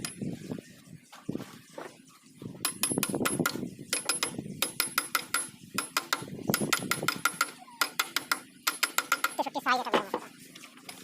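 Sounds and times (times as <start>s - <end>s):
metal-on-metal taps and clinks: 2.6s - 9.4s.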